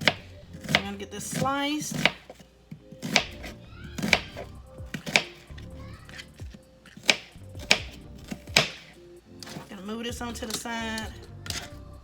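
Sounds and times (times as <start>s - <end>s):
knife slicing onion on board: 0.0s - 9.7s, 10.4s - 11.8s
quiet background music: 0.0s - 12.0s.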